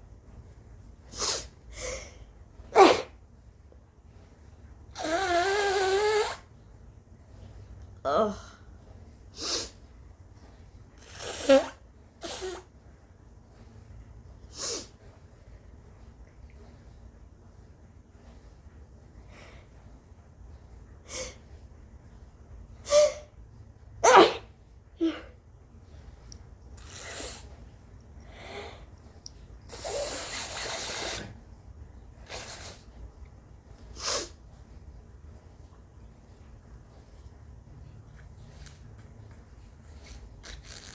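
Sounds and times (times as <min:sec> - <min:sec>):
woman sneezing: 0:02.8 - 0:03.2, 0:24.0 - 0:25.3
person blowing nose: 0:05.0 - 0:06.4, 0:11.0 - 0:12.7, 0:26.8 - 0:27.5, 0:29.7 - 0:31.4, 0:32.2 - 0:32.9, 0:39.9 - 0:40.9.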